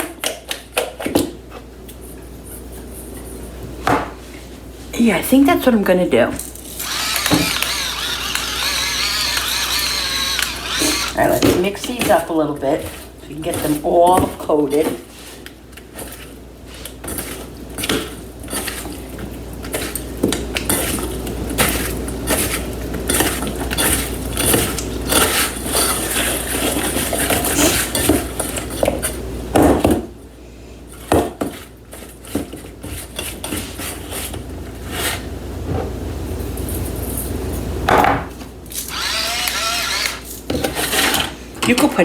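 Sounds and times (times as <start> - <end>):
utensil stirring and clinking bowl: 15.9 - 29.2, 31.0 - 35.2.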